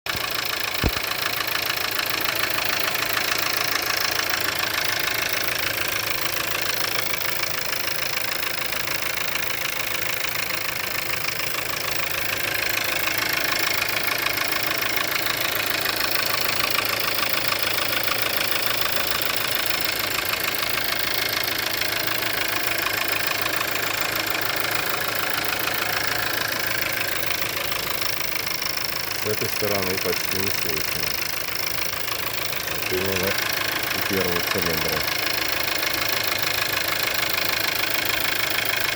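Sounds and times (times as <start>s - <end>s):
car engine idling with knock: 0.1s - 38.9s.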